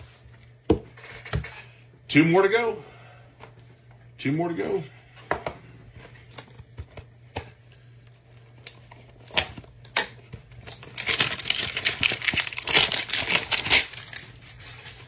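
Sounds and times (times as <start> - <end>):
faint electrical hum: 0.0 - 15.0
plastic wrapper crinkling: 8.6 - 15.0.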